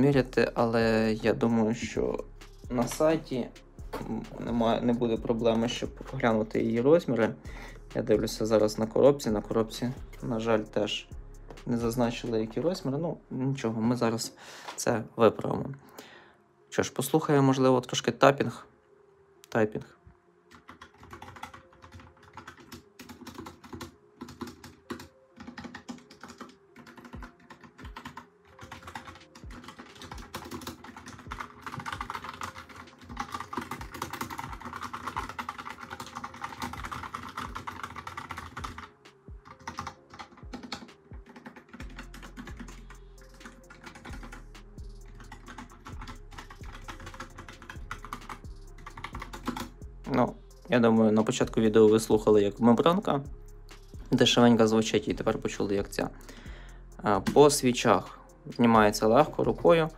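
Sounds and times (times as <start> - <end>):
mechanical keyboard typing: 20.5 - 44.4, 45.1 - 49.7.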